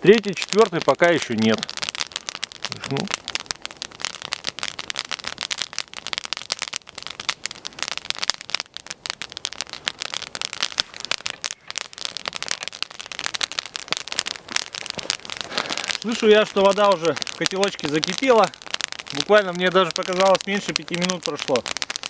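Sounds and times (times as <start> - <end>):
campfire crackling: 0.0 - 22.0.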